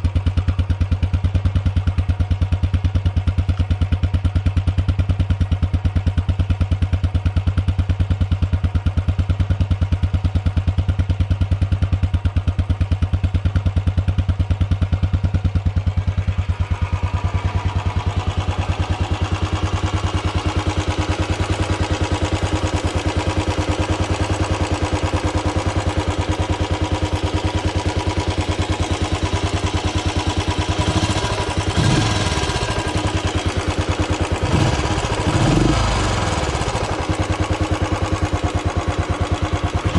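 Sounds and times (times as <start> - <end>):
motorcycle idling: 0.0 - 39.9.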